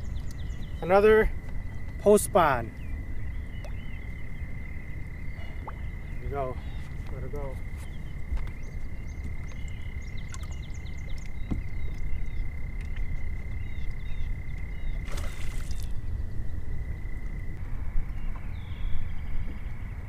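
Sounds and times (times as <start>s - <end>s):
bird chirps: 0.0s - 2.0s, 2.6s - 15.9s
low rumble of wind and water: 0.0s - 20.0s.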